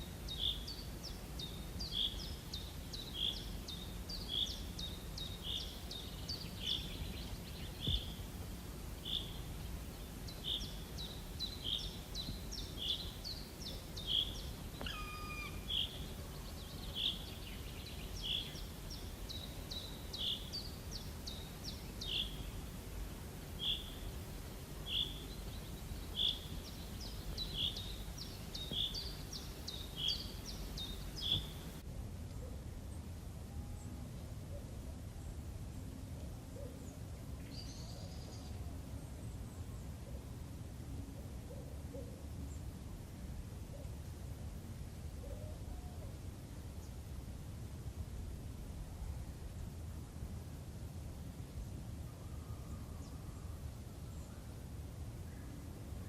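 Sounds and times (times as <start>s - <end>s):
bird calling: 10.3s - 22.5s, 24.9s - 31.8s.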